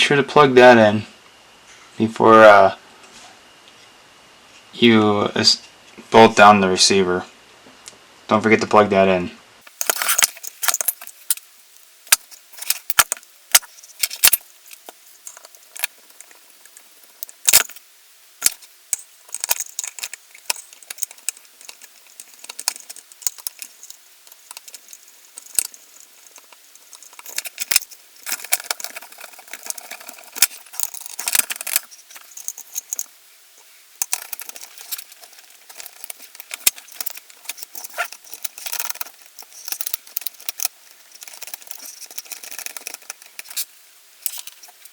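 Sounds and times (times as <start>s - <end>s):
plastic parts clicking and rattling: 9.7s - 11.5s, 12.1s - 17.8s, 18.4s - 33.1s, 34.0s - 44.9s.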